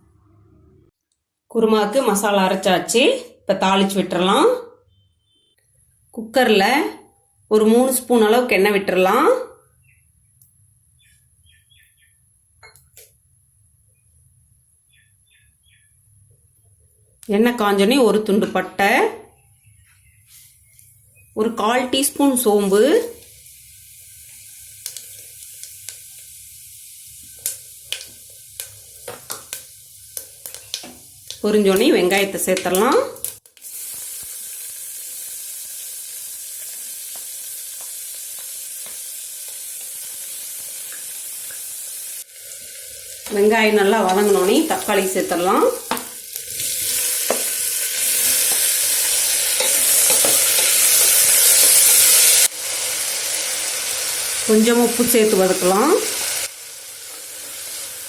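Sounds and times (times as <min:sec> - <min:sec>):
oil sizzling: 0:20.3 - 0:58.0
seeds popping in hot oil: 0:22.1 - 0:58.0
spoon stirring: 0:43.2 - 0:51.6.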